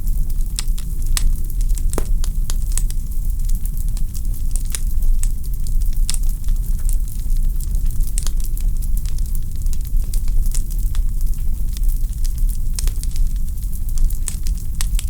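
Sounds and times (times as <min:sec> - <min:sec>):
wood fire crackling: 0:00.6 - 0:09.9.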